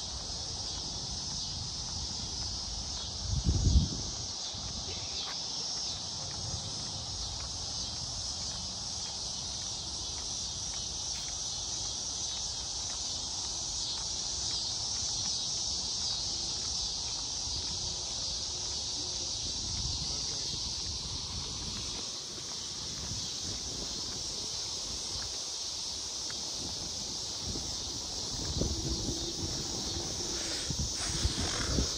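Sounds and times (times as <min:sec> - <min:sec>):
insects chirping: 0:00.0 - 0:31.9.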